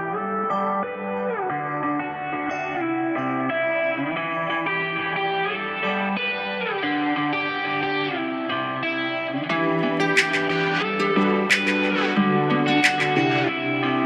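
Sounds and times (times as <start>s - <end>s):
electric guitar with sliding notes: 0.0s - 14.0s.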